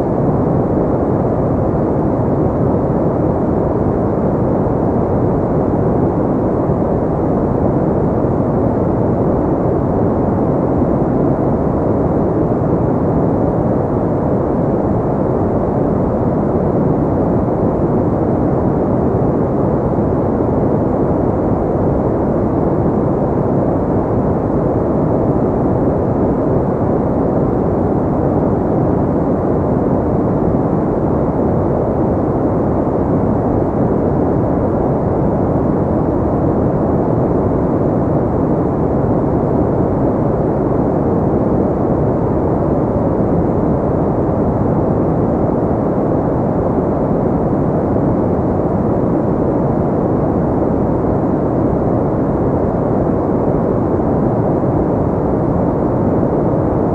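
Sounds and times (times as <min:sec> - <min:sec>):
steady pink noise: 0:00.0 - 0:56.9.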